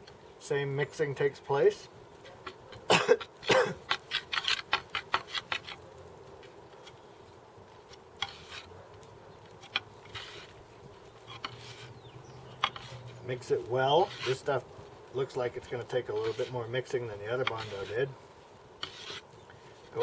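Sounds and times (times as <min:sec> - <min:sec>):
tool scraping filler: 0:11.3 - 0:13.2, 0:13.9 - 0:14.5, 0:15.8 - 0:18.1, 0:18.8 - 0:19.3.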